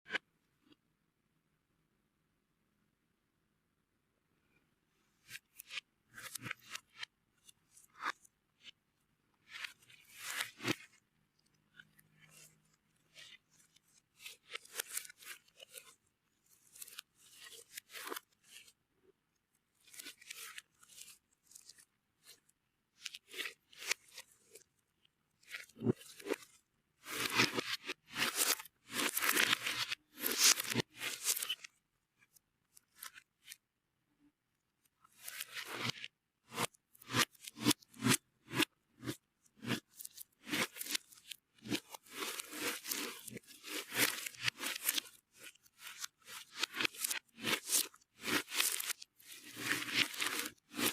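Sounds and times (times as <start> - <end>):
slime crunching and crackling: 40.4 - 50.9.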